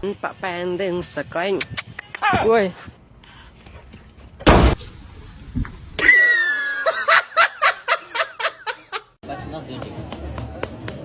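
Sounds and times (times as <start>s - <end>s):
loud bang: 4.4s - 4.9s.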